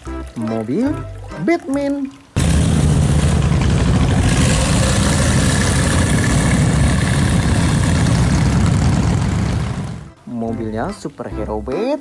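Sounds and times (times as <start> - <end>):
car engine rumbling: 2.4 - 10.2.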